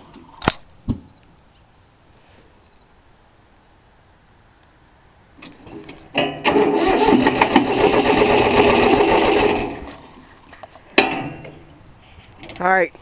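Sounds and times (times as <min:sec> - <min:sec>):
electric starter cranking diesel engine: 0:05.5 - 0:10.2.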